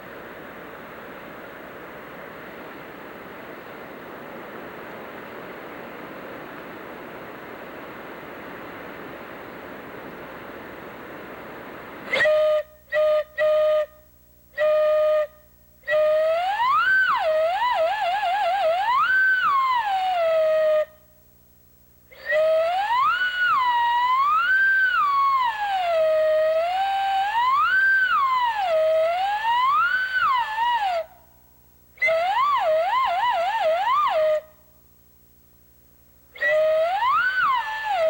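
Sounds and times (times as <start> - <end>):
steam whistle sliding pitch: 12.0 - 21.0, 22.1 - 31.2, 32.0 - 34.6, 36.4 - 38.0.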